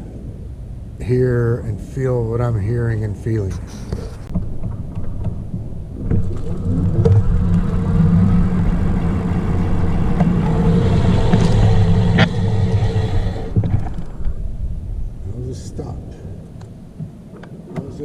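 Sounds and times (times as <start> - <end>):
tyre and wind rumble: 0.0 - 18.0
electric motor whine: 6.2 - 14.2
brake hiss: 6.5 - 14.3.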